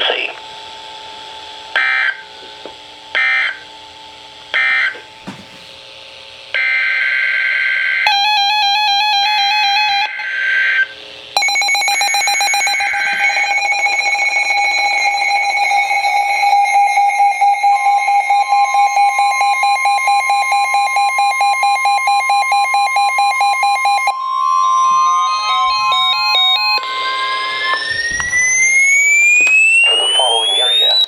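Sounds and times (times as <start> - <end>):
buzzing warbling data tones: 11.4 - 31.0
data bursts: 11.4 - 31.0
two-tone attention signal: 11.4 - 31.0.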